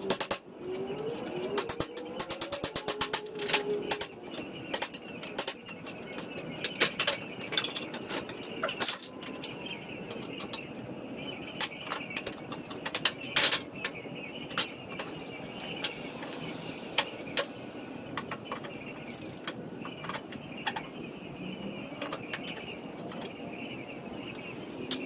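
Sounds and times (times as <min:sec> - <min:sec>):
sharp taps and clicks: 0:01.6 - 0:07.2.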